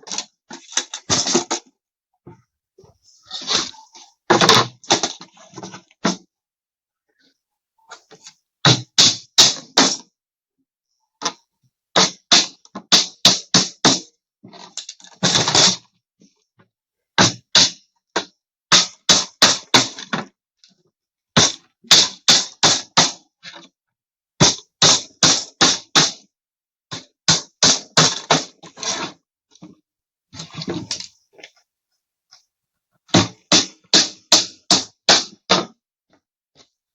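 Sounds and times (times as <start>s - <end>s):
hammer driving nails into plywood: 33.1s - 35.8s.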